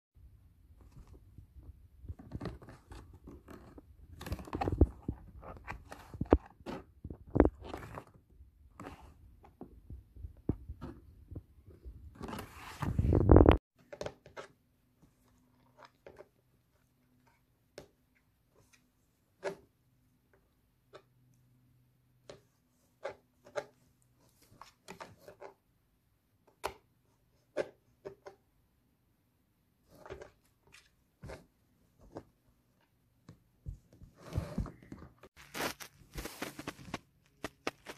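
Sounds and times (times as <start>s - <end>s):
rustling and crunching handling: 33.7s - 37.9s.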